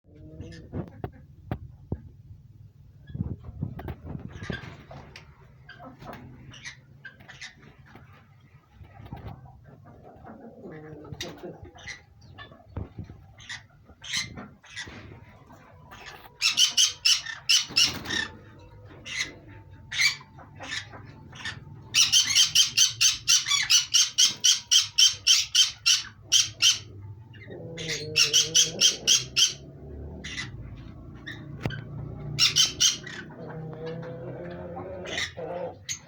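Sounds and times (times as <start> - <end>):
parrots calling: 15.9 - 36.0.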